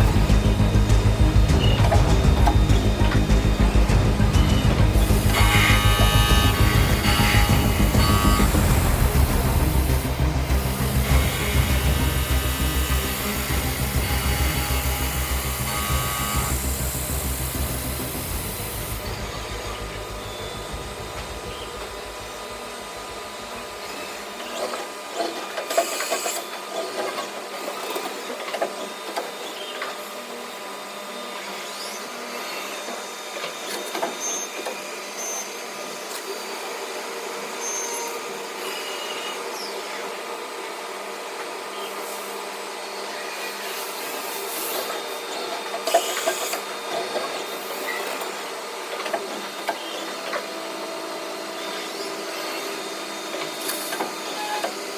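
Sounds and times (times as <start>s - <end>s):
cutting noise bursts: 0.0s - 23.9s
milling machine whine: 0.0s - 25.1s, 29.5s - 54.9s.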